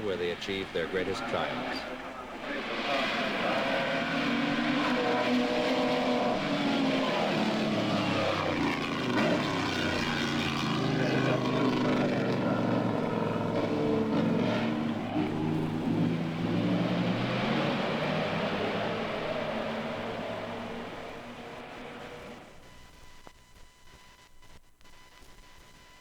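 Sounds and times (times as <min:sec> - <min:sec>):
racing car engines: 0:00.0 - 0:22.7.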